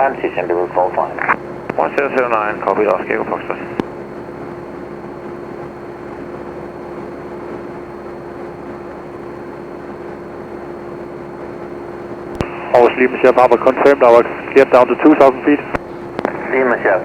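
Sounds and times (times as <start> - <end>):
light aircraft engine drone: 0.0 - 17.0.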